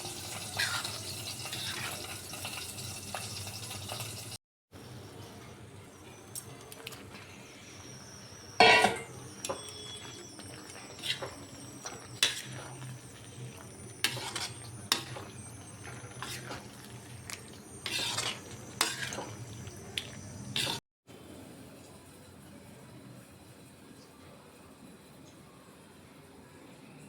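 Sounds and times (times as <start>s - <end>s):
spoon scraping a metal pan: 8.6s - 9.9s, 11.0s - 12.9s, 14.0s - 16.8s, 17.8s - 19.4s, 20.6s - 20.8s.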